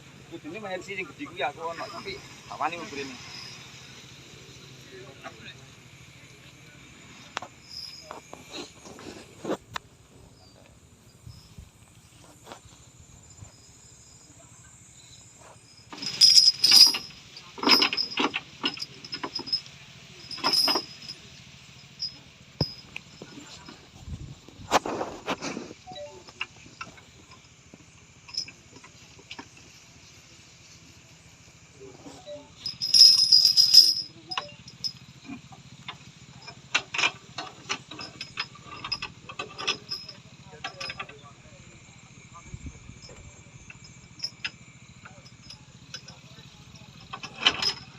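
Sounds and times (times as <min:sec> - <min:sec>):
insects trilling: 0:00.0 - 0:47.9
metal clanks and clinks: 0:06.4 - 0:09.6, 0:15.9 - 0:30.2, 0:32.0 - 0:42.3, 0:42.9 - 0:47.9
metal towing gear rattling: 0:15.9 - 0:26.1, 0:28.2 - 0:29.7, 0:32.1 - 0:41.2, 0:43.7 - 0:47.9
loud metal clanks and rattles: 0:16.0 - 0:21.2, 0:32.6 - 0:35.0, 0:46.9 - 0:47.9
truck engine idling: 0:16.0 - 0:42.6.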